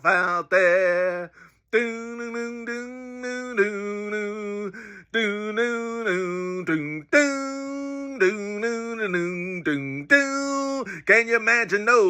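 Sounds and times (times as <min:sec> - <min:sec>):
man singing wordless melody: 0:00.0 - 0:12.0
short breaths: 0:01.3 - 0:01.7, 0:04.7 - 0:05.1, 0:10.9 - 0:11.1.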